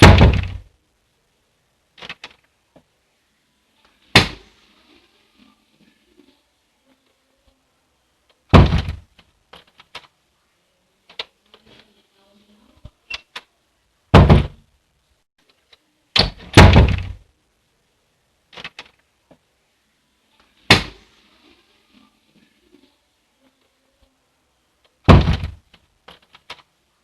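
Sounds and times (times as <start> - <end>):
door thudding shut: 0.0 - 0.7, 8.5 - 9.0, 14.1 - 14.6, 16.2 - 17.2, 25.1 - 25.6.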